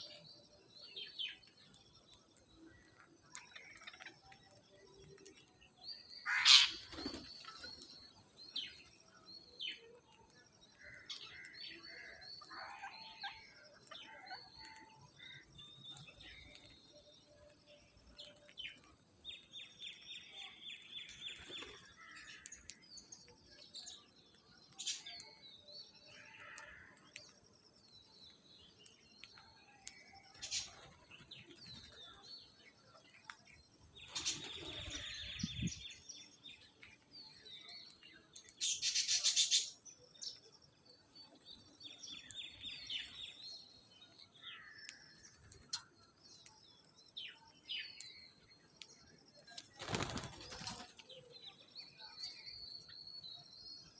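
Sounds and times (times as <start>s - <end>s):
parrots chirping and calling: 6.3s - 6.9s.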